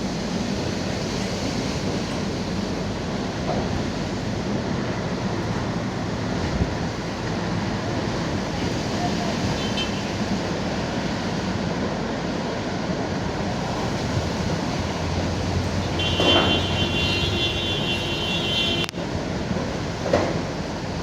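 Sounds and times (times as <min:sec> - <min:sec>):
wind buffeting the microphone: 0:00.0 - 0:16.2.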